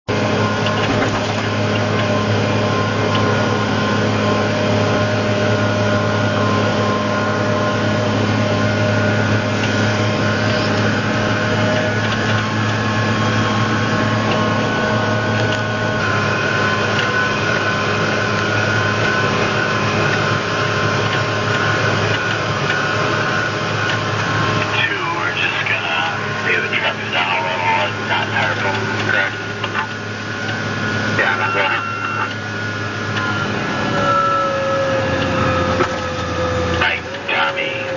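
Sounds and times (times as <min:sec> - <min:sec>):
tractor diesel engine droning: 0:00.1 - 0:37.9.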